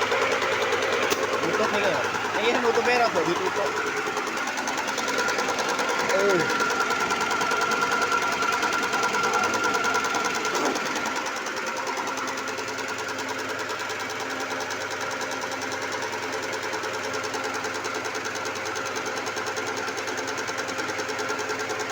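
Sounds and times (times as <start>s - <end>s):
machine rattling with whine: 0.0s - 15.0s.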